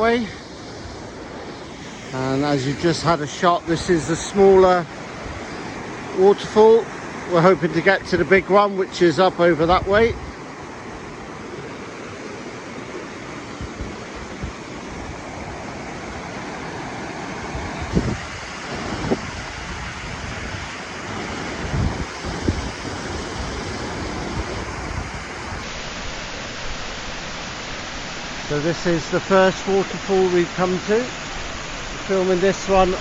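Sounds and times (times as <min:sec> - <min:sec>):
waterfall rushing: 0:00.0 - 0:09.5, 0:10.3 - 0:33.0
wind buffeting microphone: 0:09.6 - 0:10.4, 0:13.5 - 0:16.3, 0:17.4 - 0:25.7.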